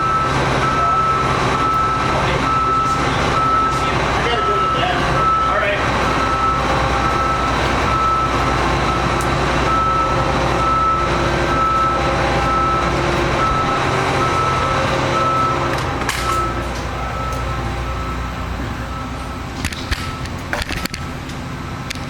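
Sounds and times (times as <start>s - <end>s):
backup alarm beeping: 0.0s - 21.2s
diesel engine running: 0.0s - 22.0s.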